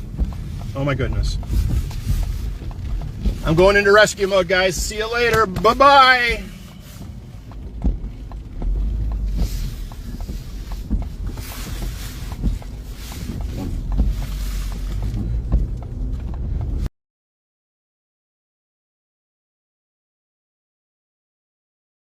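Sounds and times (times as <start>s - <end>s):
vehicle noise: 0.0s - 16.9s
wind rumble: 0.0s - 16.9s
small knocks and clicks: 7.0s - 16.9s.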